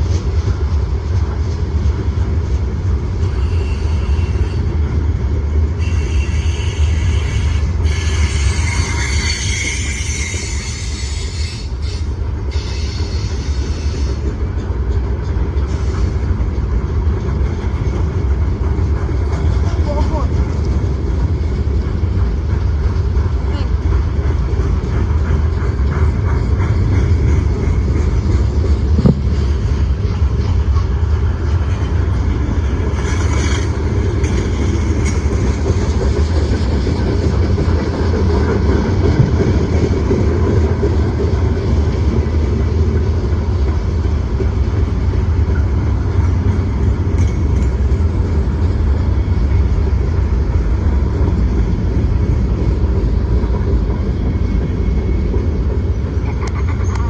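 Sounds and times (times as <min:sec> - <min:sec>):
steel wheels rumbling on rail: 0:00.0 - 0:57.0
hissing screech: 0:06.0 - 0:14.2.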